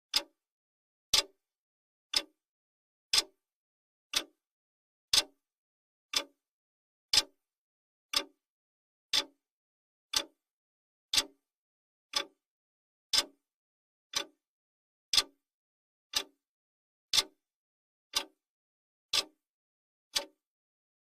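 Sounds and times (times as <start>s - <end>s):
clock ticking: 4.1s - 4.3s, 18.1s - 18.3s.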